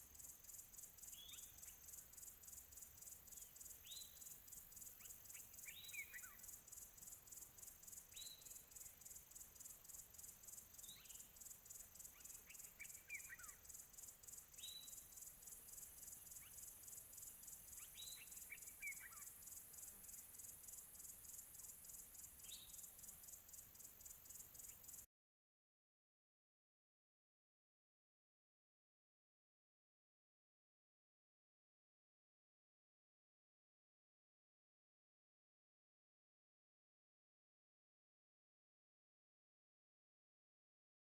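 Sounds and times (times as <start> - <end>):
high-pitched insect chorus: 0.0 - 25.0.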